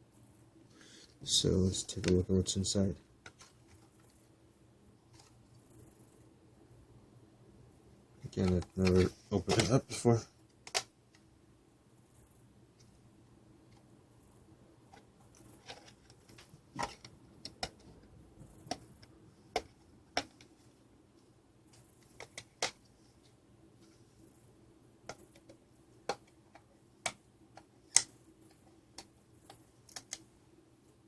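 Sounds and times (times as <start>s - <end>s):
plastic case being handled: 8.3s - 9.9s, 14.9s - 20.7s.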